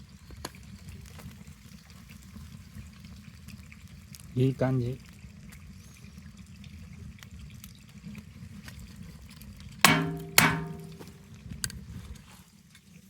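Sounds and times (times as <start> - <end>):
low steady hiss: 9.9 - 11.2
sharp metallic clanks: 9.9 - 11.2.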